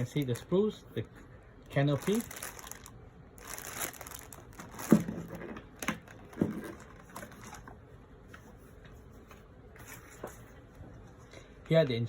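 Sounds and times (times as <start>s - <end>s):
plastic rustling: 0.0s - 0.6s, 1.7s - 7.8s.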